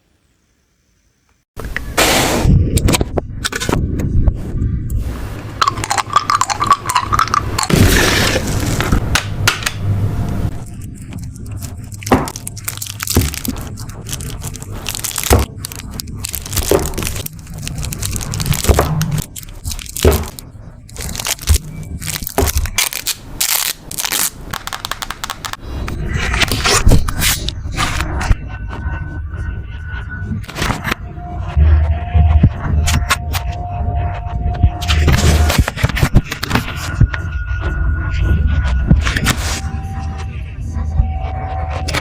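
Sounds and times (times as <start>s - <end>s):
paper and plastic crinkling: 10.5s - 25.6s.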